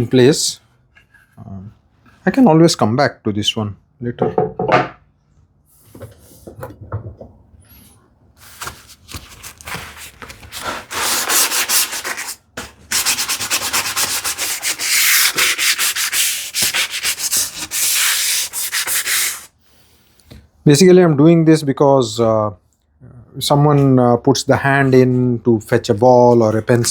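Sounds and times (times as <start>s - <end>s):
sandpaper rubbing on wood: 10.6s - 19.5s.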